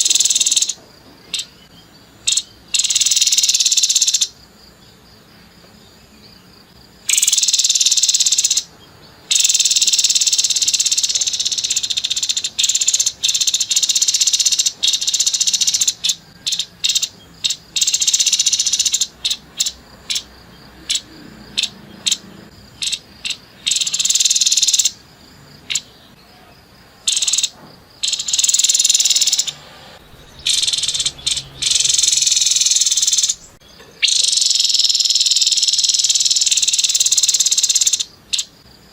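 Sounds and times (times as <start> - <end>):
bird harsh buzzy rattling calls: 9.3 - 20.3, 27.1 - 38.0.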